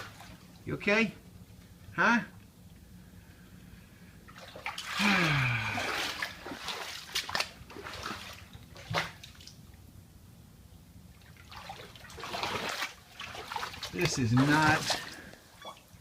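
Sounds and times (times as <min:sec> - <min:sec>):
floodwater sloshing and splashing: 0:00.0 - 0:00.6, 0:04.2 - 0:09.8, 0:11.1 - 0:16.0.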